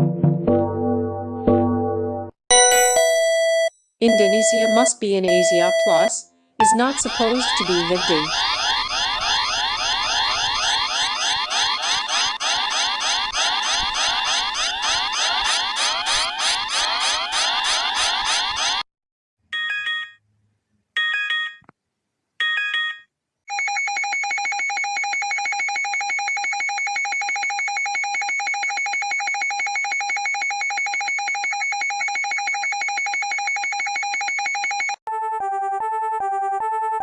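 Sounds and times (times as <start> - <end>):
rapidly pulsing alarm tone: 3.3 - 18.8
electronic tone bursts: 4.1 - 8.3.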